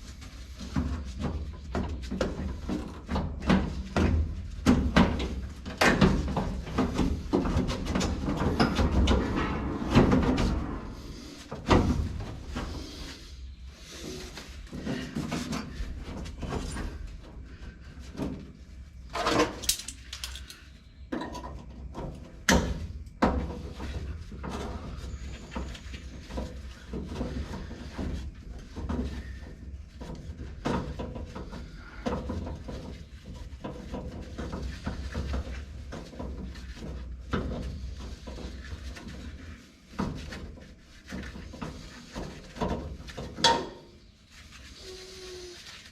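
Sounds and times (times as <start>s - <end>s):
metal clanks scrapes and rattles: 4.8s - 17.2s, 19.0s - 29.4s.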